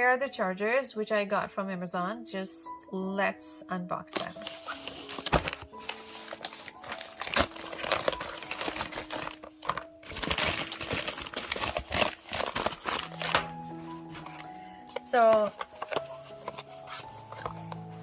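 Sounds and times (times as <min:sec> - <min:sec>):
packaging crinkling and rustling: 0:04.1 - 0:18.0.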